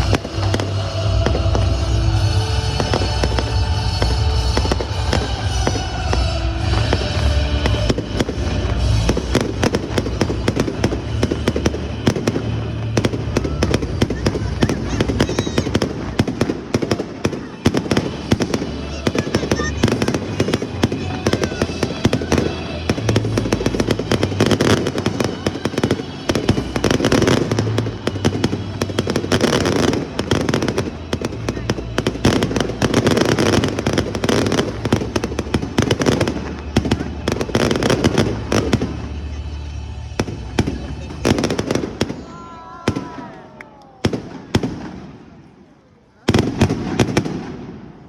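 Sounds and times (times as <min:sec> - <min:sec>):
music playing: 0:00.0 - 0:44.7
fireworks bangs and crackles: 0:00.0 - 0:48.0.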